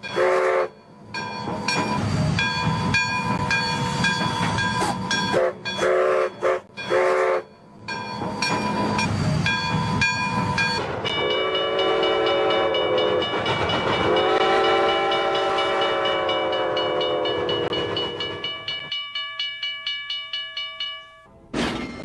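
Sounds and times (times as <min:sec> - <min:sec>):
multi-note train horn blasts: 0:00.0 - 0:00.8, 0:05.3 - 0:07.6, 0:11.1 - 0:13.4, 0:14.0 - 0:18.5
rhythmic clacking: 0:00.8 - 0:21.3
toy train toots: 0:04.7 - 0:07.6, 0:10.6 - 0:18.9.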